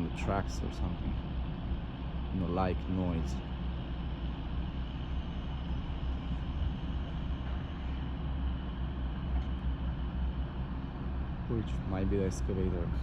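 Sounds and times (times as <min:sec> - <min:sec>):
heavy machinery rumble: 0:00.0 - 0:13.0.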